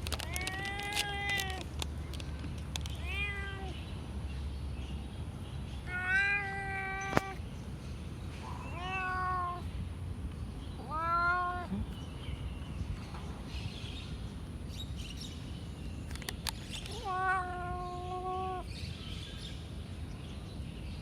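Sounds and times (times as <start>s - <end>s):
cat meowing: 0.2s - 1.7s, 3.0s - 3.8s, 5.8s - 7.4s, 8.4s - 9.7s, 10.8s - 11.9s, 16.9s - 18.7s.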